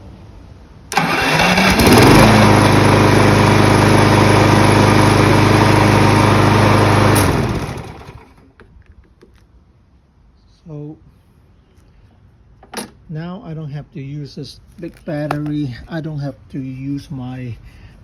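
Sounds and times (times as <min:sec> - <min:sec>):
lawn mower engine starting and running: 0:00.9 - 0:08.6.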